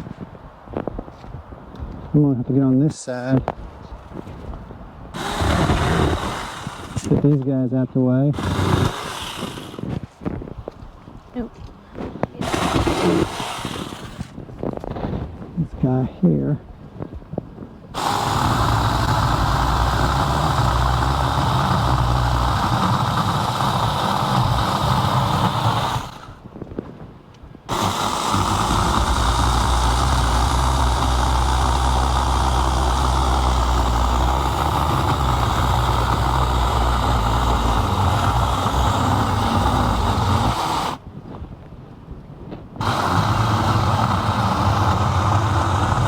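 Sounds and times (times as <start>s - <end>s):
mini chainsaw cutting wood: 5.2s - 7.6s, 8.3s - 10.1s, 12.4s - 14.4s, 18.0s - 26.4s, 27.7s - 41.0s, 42.8s - 46.0s.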